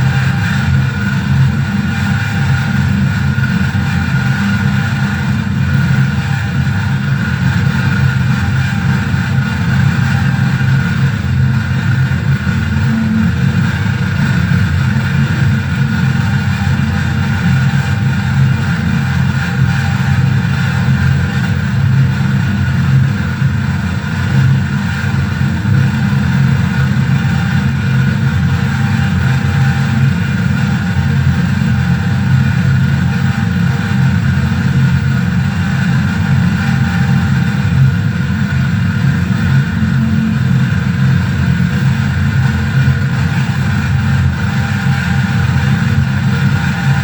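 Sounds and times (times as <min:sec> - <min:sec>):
heavy low rumble: 0:00.0 - 0:47.0
high ringing feedback tone: 0:08.3 - 0:21.2.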